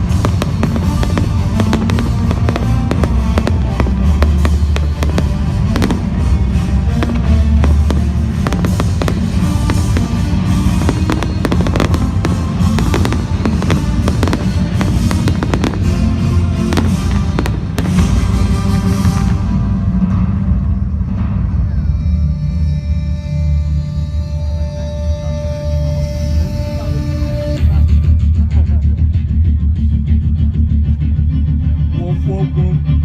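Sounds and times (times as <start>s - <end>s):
fireworks bangs and crackles: 0.0s - 19.5s.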